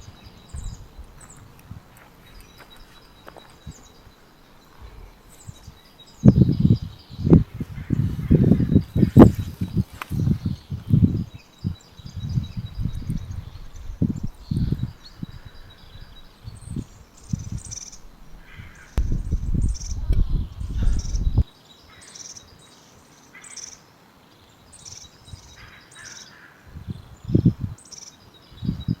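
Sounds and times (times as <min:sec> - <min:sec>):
wind rumble on microphone: 0:00.0 - 0:21.5, 0:26.6 - 0:27.8, 0:28.4 - 0:29.0
small birds chirping: 0:00.0 - 0:29.0.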